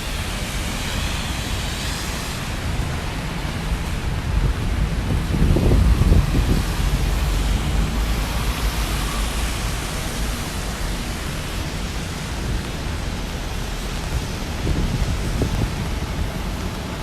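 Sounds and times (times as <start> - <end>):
heavy rain hissing: 0.0 - 17.0
wind rumbling: 2.2 - 17.0.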